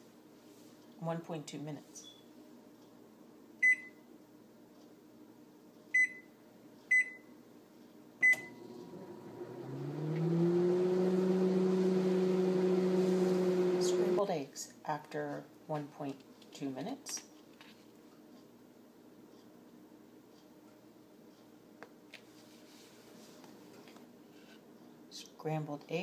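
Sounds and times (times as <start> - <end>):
microwave keypad beeping: 3.6 - 4.0, 6.0 - 6.3, 6.9 - 7.3, 8.2 - 8.6
microwave oven humming: 6.0 - 14.2.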